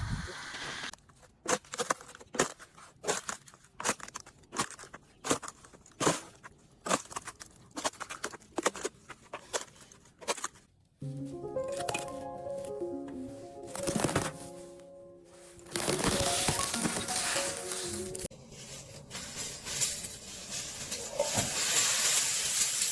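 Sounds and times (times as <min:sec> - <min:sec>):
ice cracking and crunching: 0:01.0 - 0:10.7, 0:13.7 - 0:14.5, 0:15.6 - 0:18.3.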